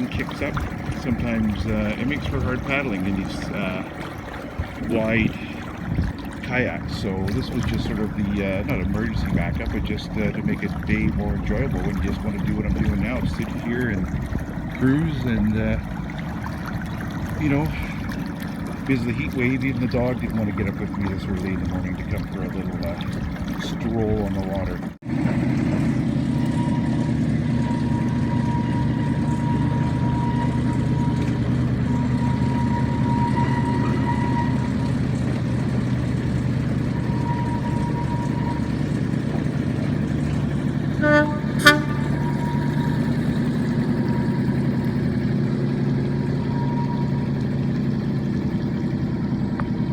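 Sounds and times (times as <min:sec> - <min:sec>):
outboard motor running: 0:00.0 - 0:49.9
brief tone: 0:25.9 - 0:34.9, 0:36.9 - 0:38.8, 0:41.0 - 0:44.8, 0:46.4 - 0:47.6.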